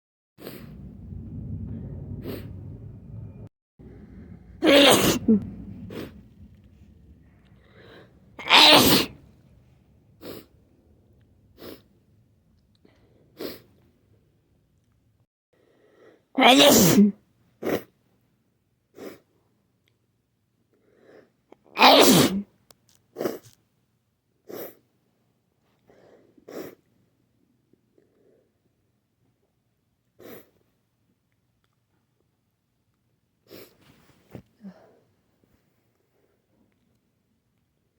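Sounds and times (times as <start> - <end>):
person sneezing: 4.6 - 5.4, 8.4 - 9.2, 16.4 - 17.1, 21.8 - 22.4.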